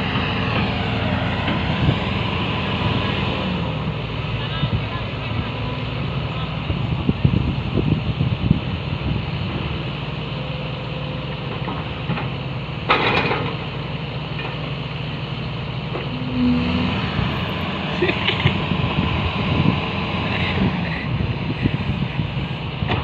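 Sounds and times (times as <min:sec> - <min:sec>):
excavator diesel engine running: 0:00.0 - 0:23.0
short tone: 0:16.1 - 0:17.5.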